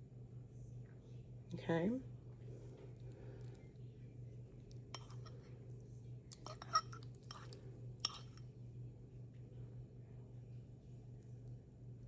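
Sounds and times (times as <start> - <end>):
low steady hum: 0.0 - 12.0
person chewing food: 2.6 - 3.8, 4.4 - 8.5.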